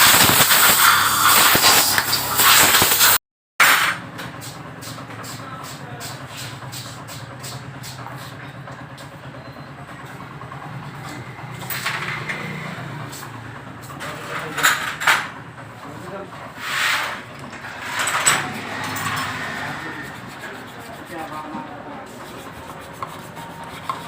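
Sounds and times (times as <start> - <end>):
motorcycle engine idling: 4.1 - 14.1, 15.4 - 16.6.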